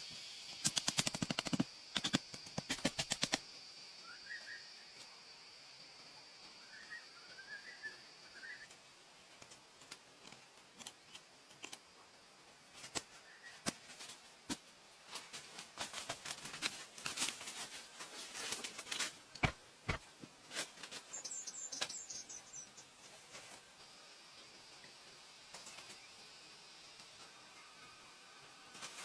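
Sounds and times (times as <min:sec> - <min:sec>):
bird chirps: 0:21.1 - 0:22.9.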